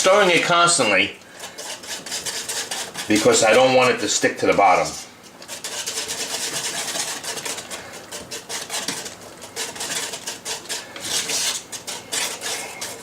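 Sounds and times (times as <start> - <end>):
utensil scraping bottom of pot: 0.0 - 13.0.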